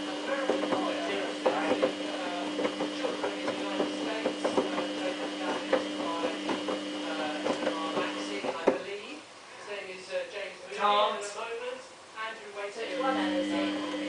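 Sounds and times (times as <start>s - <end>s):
washing machine motor hum: 0.0s - 9.3s, 12.8s - 14.0s
drum clicks and knocks: 0.3s - 8.8s.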